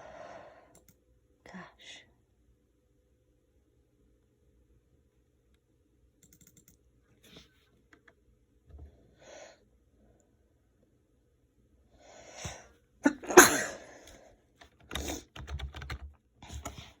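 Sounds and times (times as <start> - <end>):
person sneezing: 12.4 - 14.0.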